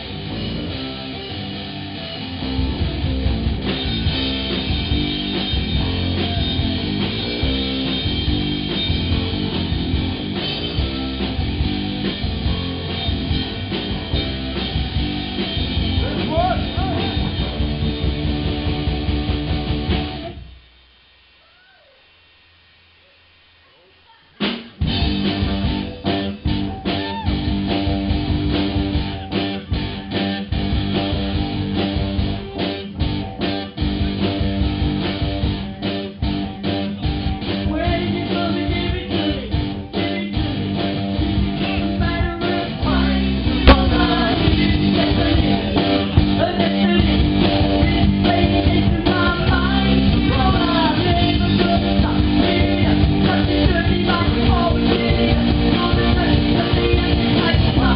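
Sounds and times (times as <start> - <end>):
live rock band playing: 0.0 - 20.4, 24.4 - 57.9
person singing: 41.6 - 57.9.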